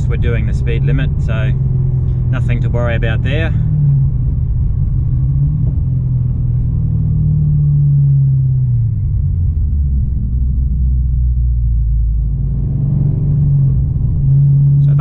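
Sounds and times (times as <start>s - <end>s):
car engine and exhaust droning: 0.0s - 15.0s
road noise: 0.0s - 15.0s.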